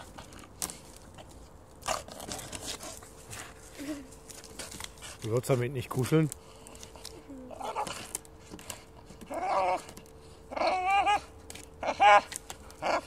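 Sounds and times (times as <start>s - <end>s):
dog whining: 7.2s - 8.2s, 8.8s - 13.0s.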